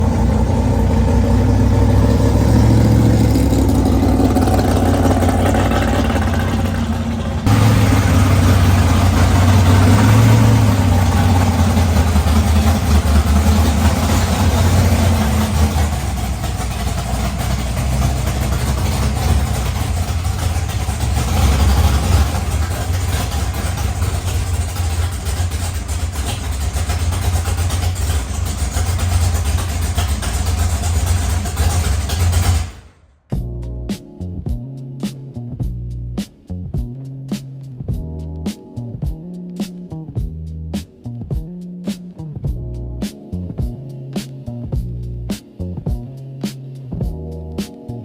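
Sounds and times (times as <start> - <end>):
car engine rumbling: 0.0 - 33.9.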